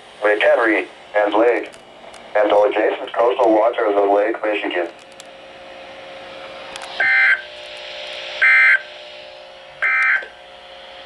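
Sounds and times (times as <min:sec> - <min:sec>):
faint radio static: 0:00.2 - 0:05.2.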